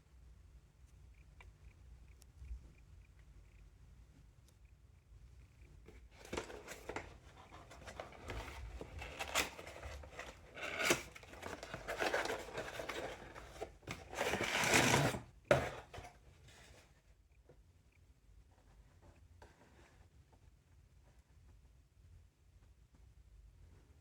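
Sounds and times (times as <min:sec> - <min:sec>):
packaging rustling and scraping: 0:05.9 - 0:16.9.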